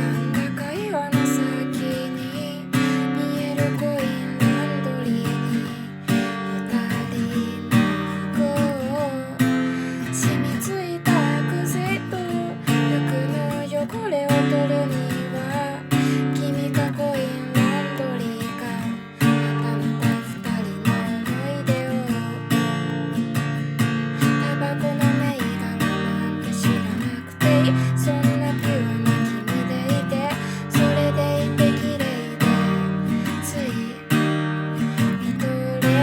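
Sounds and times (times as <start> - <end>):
person singing: 0.0 - 22.9, 24.2 - 36.0
acoustic guitar strumming: 0.0 - 36.0.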